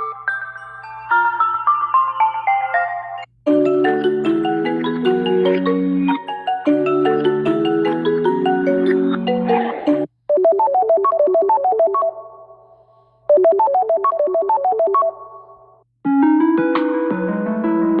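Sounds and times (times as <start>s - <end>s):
phone ringtone: 0.0s - 9.4s, 10.3s - 12.6s, 13.3s - 15.8s
different phone ringtone: 10.3s - 12.6s, 13.3s - 15.8s.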